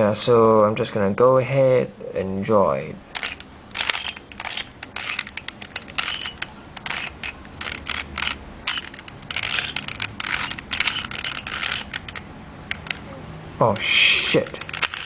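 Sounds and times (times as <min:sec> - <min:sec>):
puzzle cube plastic clicking: 0:03.2 - 0:13.0, 0:13.7 - 0:15.0.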